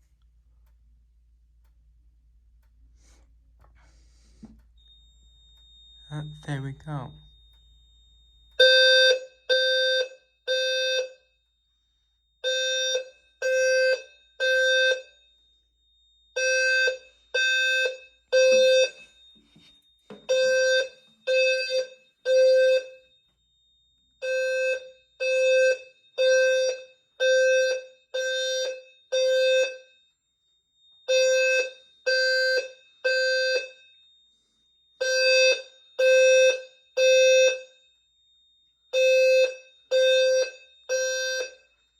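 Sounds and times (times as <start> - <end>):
fire alarm sounder tone pulses: 0.0 - 41.9
faint steady high tone: 3.8 - 8.6.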